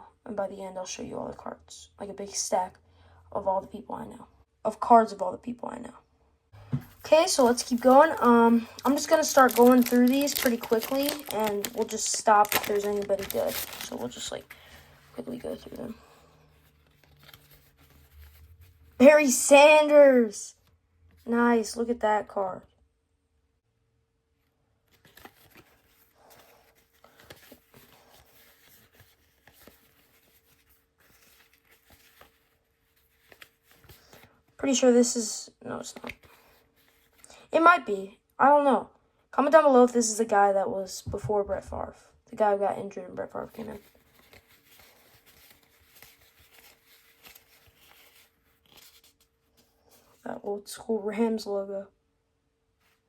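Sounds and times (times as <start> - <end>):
trading cards flipped by hand: 24.9 - 26.0, 27.2 - 34.3, 44.0 - 49.3.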